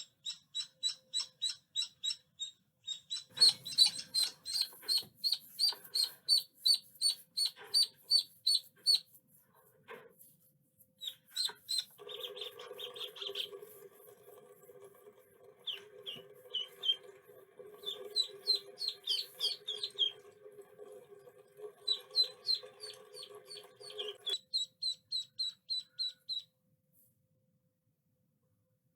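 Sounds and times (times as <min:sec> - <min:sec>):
ducklings peeping: 0:00.0 - 0:09.1, 0:11.0 - 0:13.7, 0:15.6 - 0:17.1, 0:17.8 - 0:20.3, 0:21.8 - 0:26.5.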